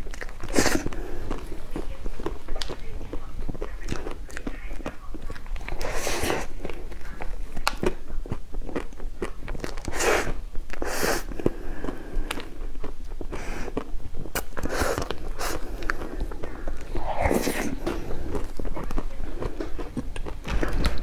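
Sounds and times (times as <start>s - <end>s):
person chewing food: 0.0s - 20.6s
wet mouth clicks: 11.9s - 20.4s.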